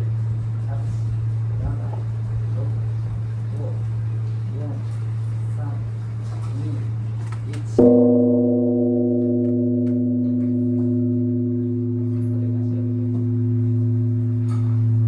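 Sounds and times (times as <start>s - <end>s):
temple bell ringing: 7.8s - 15.0s.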